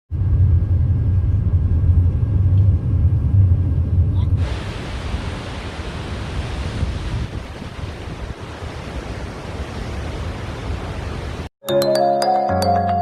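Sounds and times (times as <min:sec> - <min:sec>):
steady low rumble: 0:00.1 - 0:08.4
wind on microphone: 0:00.2 - 0:11.5
waterfall roaring: 0:04.4 - 0:11.5.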